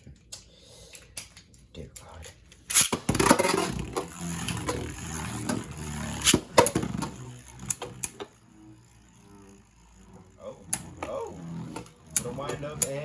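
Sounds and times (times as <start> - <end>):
spinning tops whirring and rattling: 2.6 - 13.0.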